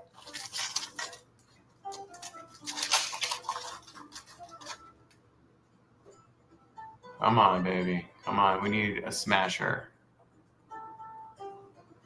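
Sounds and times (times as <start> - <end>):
foil wrapper crinkling: 0.0 - 1.2, 1.8 - 4.9.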